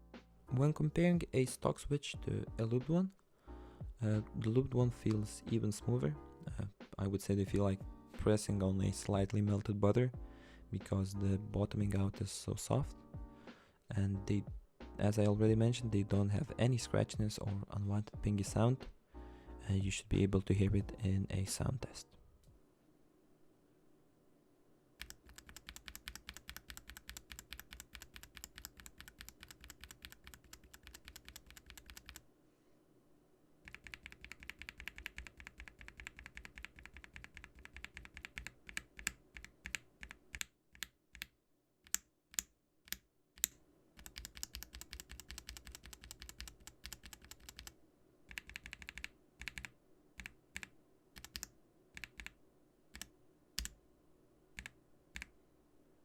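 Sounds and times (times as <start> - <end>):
mechanical keyboard typing: 25.0 - 32.2, 33.6 - 41.3, 41.9 - 47.7, 48.3 - 52.4, 53.0 - 53.8.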